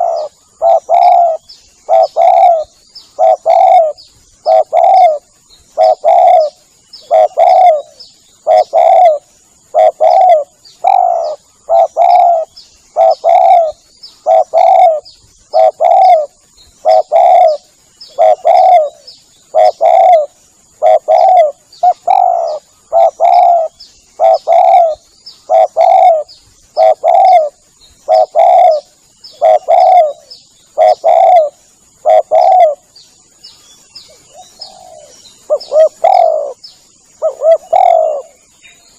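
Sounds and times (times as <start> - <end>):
dove cooing: 0.0 - 32.9, 34.1 - 36.6, 37.2 - 38.5.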